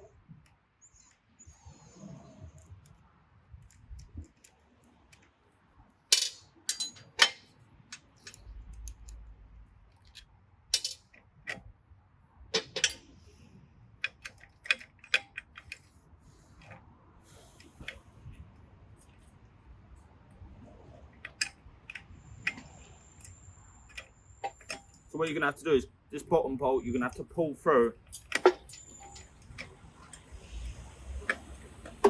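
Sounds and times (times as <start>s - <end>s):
spanner clinking on metal bolts: 6.1s - 9.1s, 9.9s - 11.6s, 12.6s - 13.1s, 14.0s - 15.9s, 21.2s - 25.1s, 28.0s - 29.8s.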